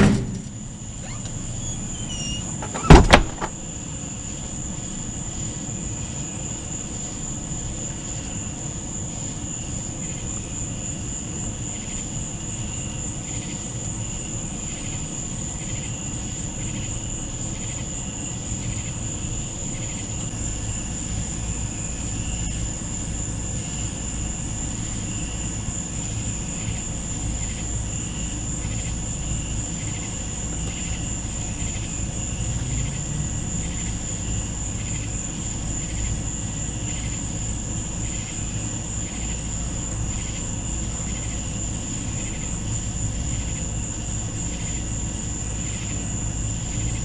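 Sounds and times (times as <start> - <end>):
loud knock: 0.0 - 0.7, 2.6 - 3.6
crickets droning: 0.0 - 47.0
pulsing insect call: 0.0 - 47.0.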